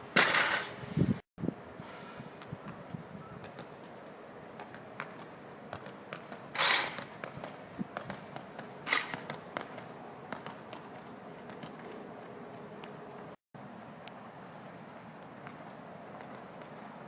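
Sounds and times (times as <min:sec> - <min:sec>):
light footfalls and taps: 0:02.4 - 0:03.9, 0:04.6 - 0:13.0.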